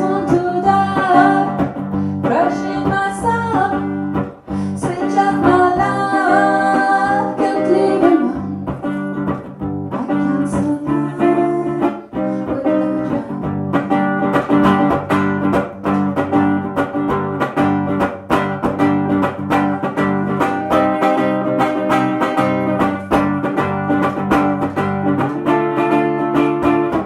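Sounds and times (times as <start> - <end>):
strummed acoustic guitar: 0.0 - 27.0
live band playing: 13.1 - 27.0.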